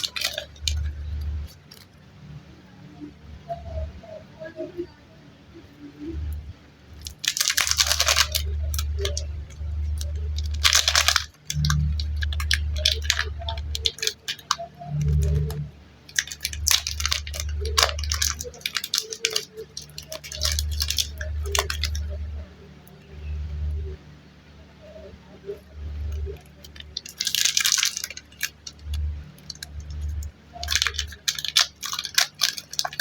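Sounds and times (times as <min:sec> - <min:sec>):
plastic packaging crinkling and tearing: 0:00.0 - 0:02.0, 0:07.0 - 0:22.2, 0:26.2 - 0:33.0.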